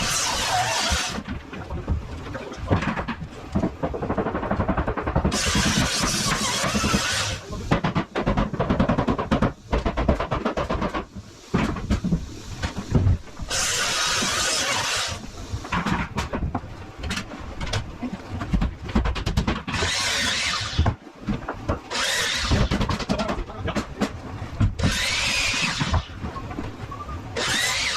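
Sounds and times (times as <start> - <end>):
power saw cutting wood: 0.0 - 1.2, 5.3 - 7.5, 13.5 - 15.2, 19.7 - 20.9, 21.9 - 22.7, 24.8 - 26.1, 27.4 - 27.9.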